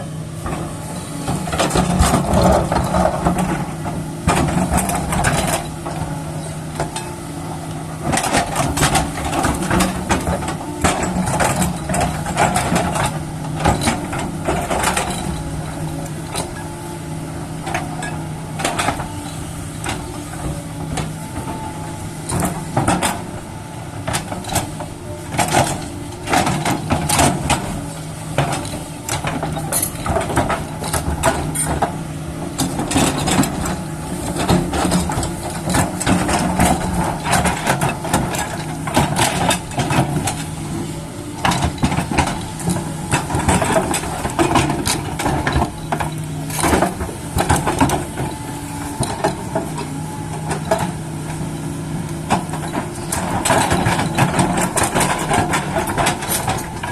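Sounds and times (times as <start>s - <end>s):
excavator engine running: 0.0s - 56.9s
clanks and scrapes on rock: 28.4s - 31.9s, 52.3s - 56.9s.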